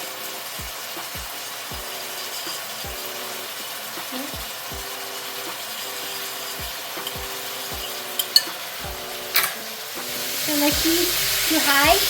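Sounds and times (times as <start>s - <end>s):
food sizzling: 0.0s - 12.0s
spatula scraping a wok: 1.4s - 4.0s
spatula clinking on pan: 2.2s - 2.8s, 5.6s - 9.7s.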